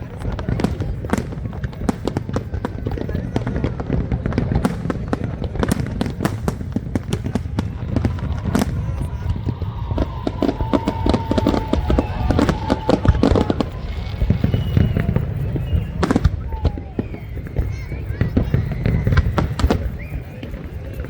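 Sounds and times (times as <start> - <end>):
fireworks exploding: 0.0 - 21.0
whistle-like tone: 8.2 - 21.0.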